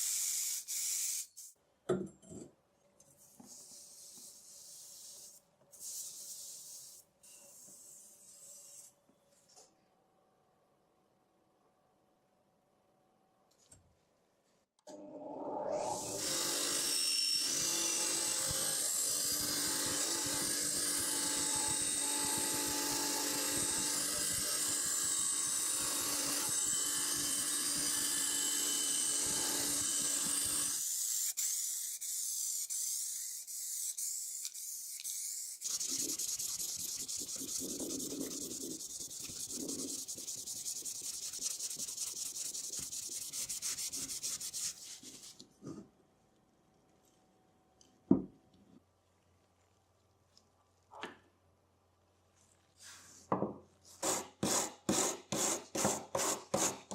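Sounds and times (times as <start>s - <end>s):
sanding metal parts: 28.1s - 45.3s.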